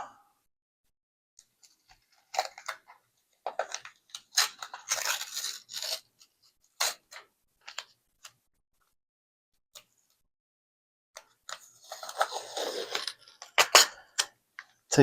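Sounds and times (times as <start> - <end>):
tape ripping off: 4.1 - 6.2, 11.8 - 14.3.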